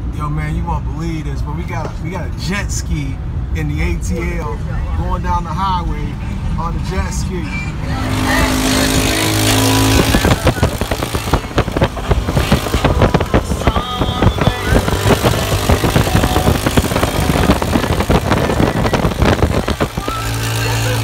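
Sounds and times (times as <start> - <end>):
vehicle engine running: 6.1 - 21.0
choppy crackling noise: 7.9 - 21.0.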